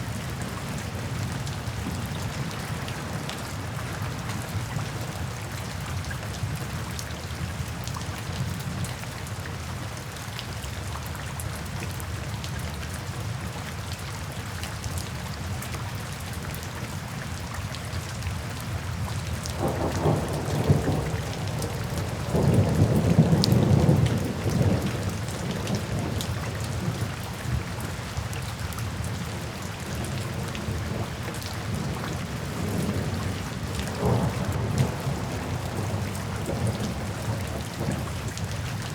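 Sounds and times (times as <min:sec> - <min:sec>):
rain falling: 0:00.0 - 0:38.9
thunder rumbling: 0:19.6 - 0:27.1, 0:31.7 - 0:38.6.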